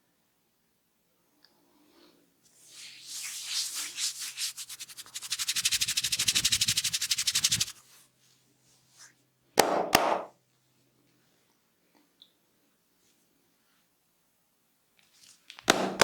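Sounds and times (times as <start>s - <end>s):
hands rubbing hair: 2.6s - 7.9s.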